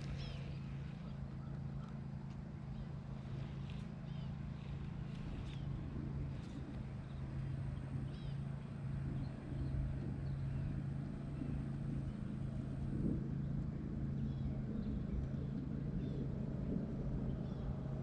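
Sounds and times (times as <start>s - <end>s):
engine running with low hum: 0.0s - 18.0s.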